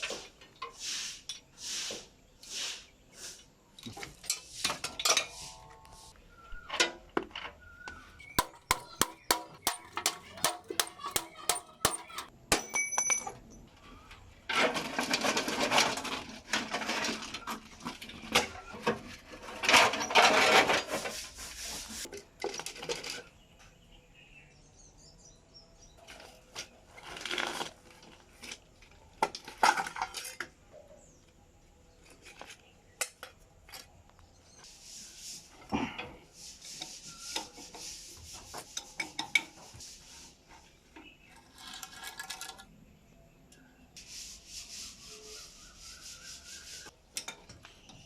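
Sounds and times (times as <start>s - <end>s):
metal parts clinking and scraping: 8.4s - 13.3s.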